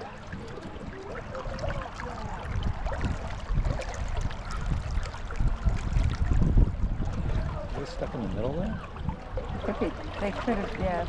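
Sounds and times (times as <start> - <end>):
river current flowing: 0.0 - 11.0.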